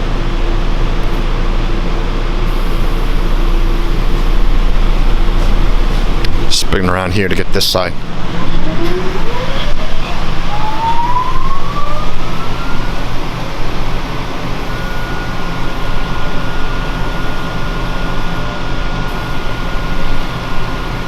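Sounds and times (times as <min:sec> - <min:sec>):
machine noise with low hum: 0:00.0 - 0:21.0
motor whine spinning up: 0:08.0 - 0:21.0.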